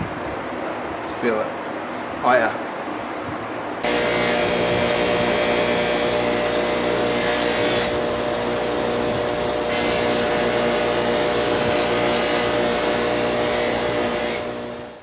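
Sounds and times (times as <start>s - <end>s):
electric machine motor humming: 3.8s - 15.0s.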